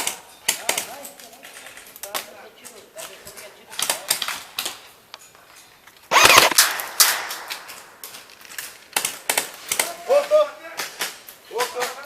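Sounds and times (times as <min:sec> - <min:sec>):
airsoft guns firing: 0:06.1 - 0:10.0.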